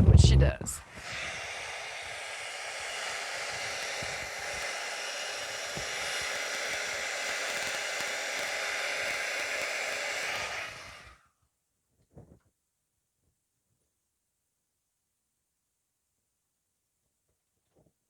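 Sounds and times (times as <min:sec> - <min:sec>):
hair dryer blowing: 0:00.0 - 0:11.2.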